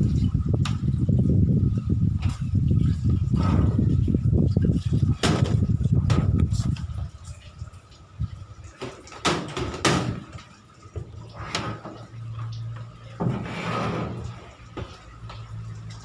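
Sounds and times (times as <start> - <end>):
low steady hum: 0.0 - 16.0
sharp knocks and clunks: 8.8 - 10.4.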